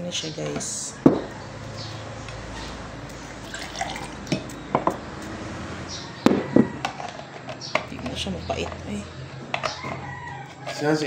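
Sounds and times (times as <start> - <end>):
liquid pouring into a glass: 3.4 - 4.2.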